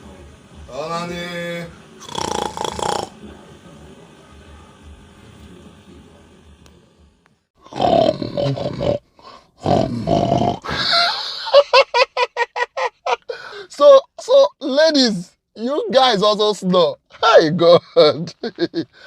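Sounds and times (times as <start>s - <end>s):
person snoring: 2.0s - 3.2s, 7.6s - 11.4s.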